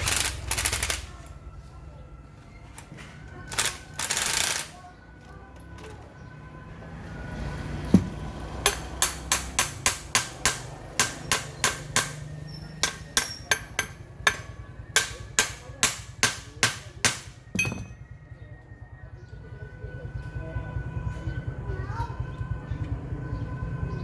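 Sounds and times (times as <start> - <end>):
hammer striking metal: 7.9 - 18.1.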